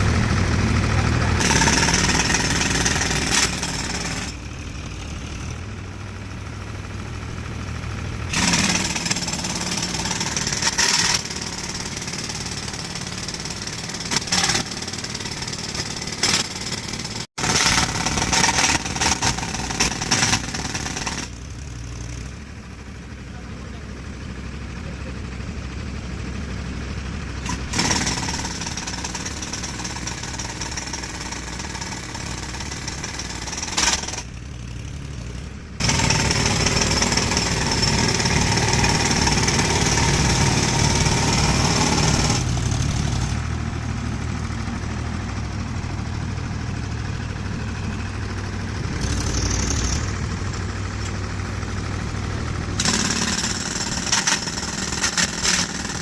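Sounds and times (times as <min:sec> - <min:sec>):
engine hum: 0:00.0 - 0:56.0
breaker hammering concrete: 0:00.7 - 0:04.4, 0:08.3 - 0:21.3, 0:35.8 - 0:43.4, 0:52.8 - 0:56.0.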